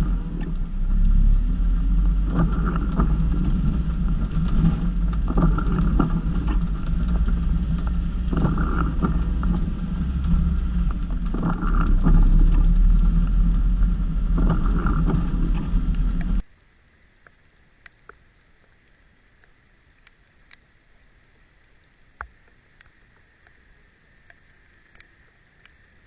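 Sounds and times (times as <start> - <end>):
engine rumble: 0.0 - 16.4
small ticks: 17.2 - 20.7, 21.8 - 25.9.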